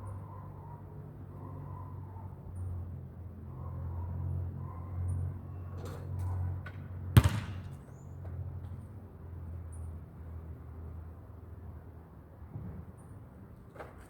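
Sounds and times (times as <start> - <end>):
basketball impact: 7.2 - 7.8.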